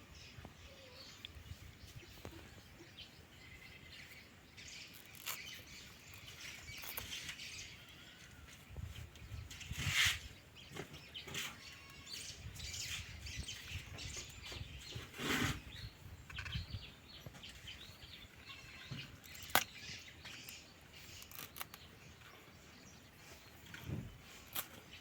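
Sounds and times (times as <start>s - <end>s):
birds chirping: 0.0s - 25.0s.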